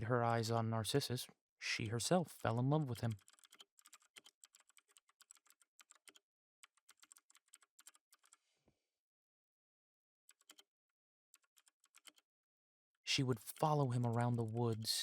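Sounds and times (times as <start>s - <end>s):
faint typing on keyboard: 2.4s - 8.4s, 10.3s - 10.6s, 11.4s - 12.3s, 13.1s - 15.0s.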